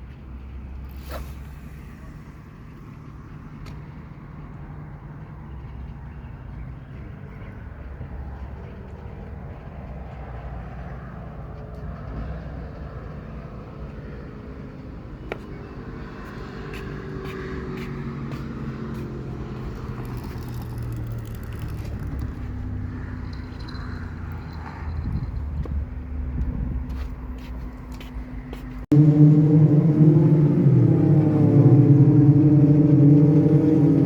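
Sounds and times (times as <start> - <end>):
jet ski engines droning: 28.4 - 34.0.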